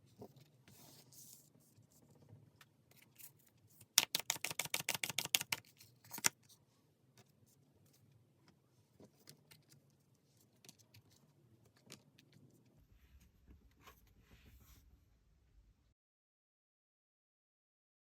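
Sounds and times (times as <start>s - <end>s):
cards clicking and tapping: 3.8s - 6.4s.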